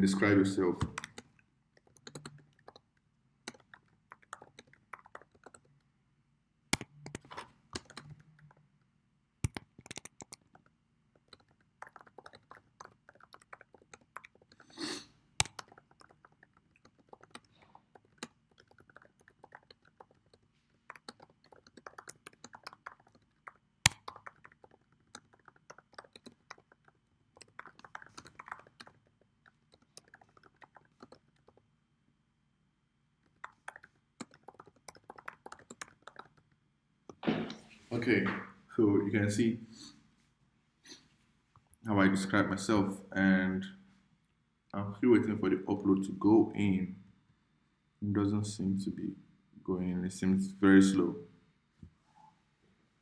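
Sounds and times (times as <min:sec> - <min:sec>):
computer keyboard typing: 0:00.8 - 0:02.9, 0:03.5 - 0:05.7, 0:06.8 - 0:08.6, 0:09.4 - 0:14.6, 0:15.4 - 0:31.6, 0:33.3 - 0:36.4.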